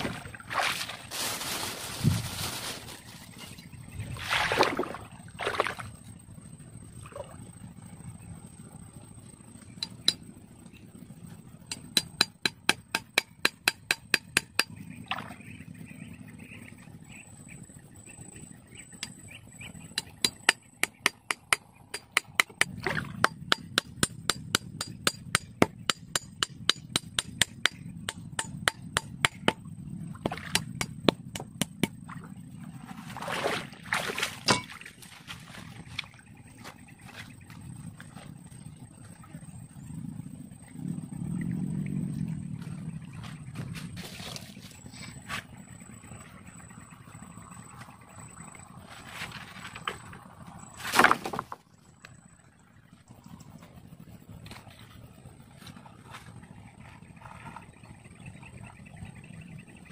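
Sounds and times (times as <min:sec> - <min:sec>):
scraping rustle: 0:00.0 - 0:03.6.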